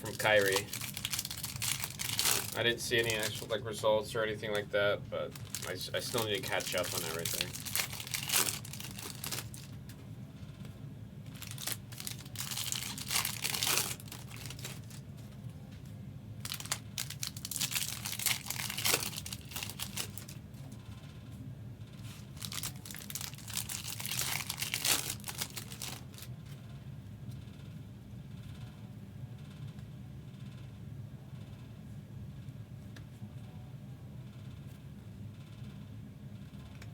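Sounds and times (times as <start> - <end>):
cards shuffled by hand: 0.0 - 3.6, 5.3 - 9.7, 22.1 - 26.3
wrappers torn and crinkled: 0.0 - 3.6, 5.2 - 9.8, 11.3 - 15.0, 16.4 - 20.4, 22.0 - 26.3.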